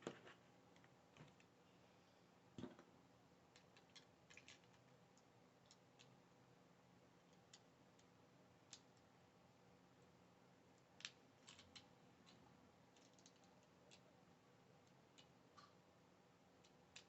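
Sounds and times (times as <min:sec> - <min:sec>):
plastic pieces clicking together: 0:03.5 - 0:04.9, 0:11.0 - 0:14.1, 0:16.6 - 0:17.0.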